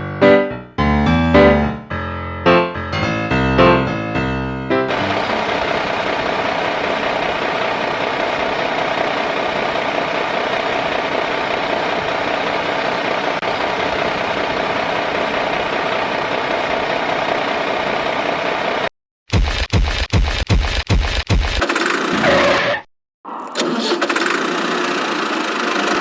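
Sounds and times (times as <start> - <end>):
small machine motor running: 4.9 - 15.3, 23.5 - 26.0.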